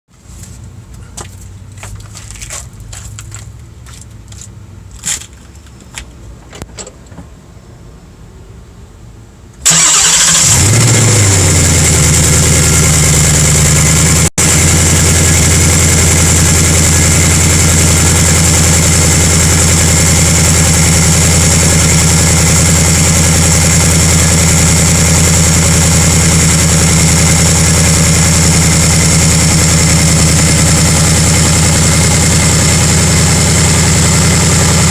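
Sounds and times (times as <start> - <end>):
car engine starting and idling: 9.5 - 34.9
engine clanking: 9.7 - 34.9.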